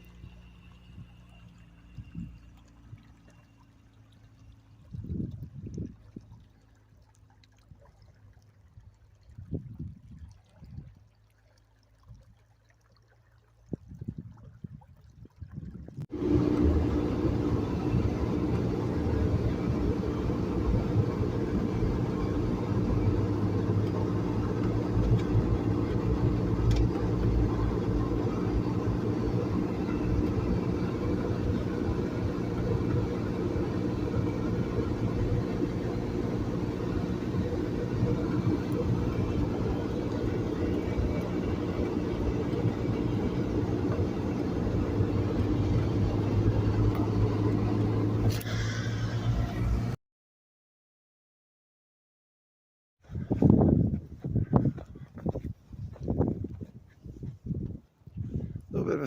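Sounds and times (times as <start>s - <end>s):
vehicle engine rumbling: 0.0s - 7.4s, 15.6s - 50.0s, 53.0s - 59.0s.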